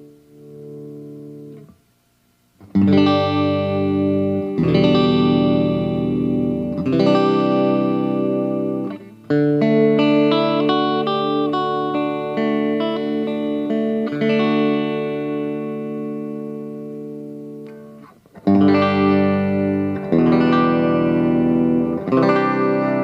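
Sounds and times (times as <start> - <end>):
electric guitar chords: 0.0 - 1.8, 2.5 - 23.0
guitar notes picked: 0.0 - 1.8, 2.6 - 23.0.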